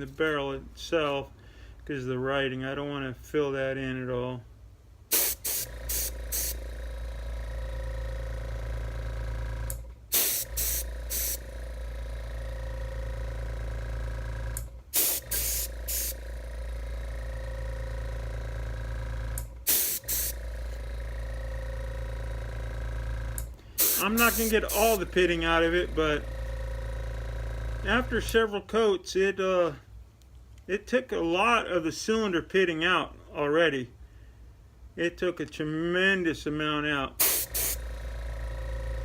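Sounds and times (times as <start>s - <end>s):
short spray hisses: 5.1s - 6.6s, 10.1s - 11.4s, 14.9s - 16.2s, 19.7s - 20.4s, 23.7s - 25.0s, 37.2s - 37.8s
spray gun motor hum: 5.1s - 28.4s, 37.2s - 39.0s.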